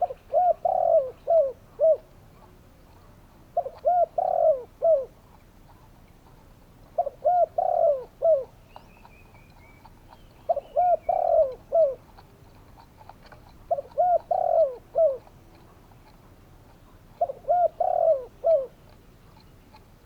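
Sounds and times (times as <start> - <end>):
dove cooing: 0.0 - 19.9
small bird twittering: 6.9 - 12.2, 13.4 - 15.6.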